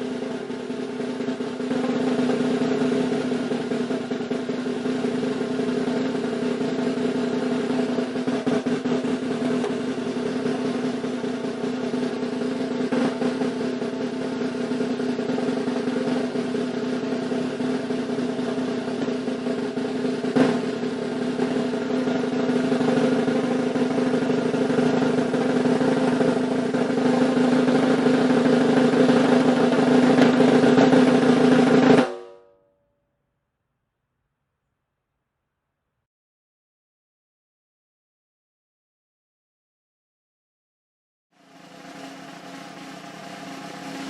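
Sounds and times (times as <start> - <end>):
drum roll: 0.0 - 32.4, 41.4 - 44.0.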